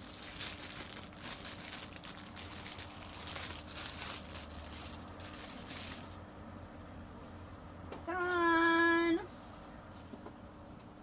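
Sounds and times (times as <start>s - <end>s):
plastic packaging crinkling: 0.0s - 6.2s.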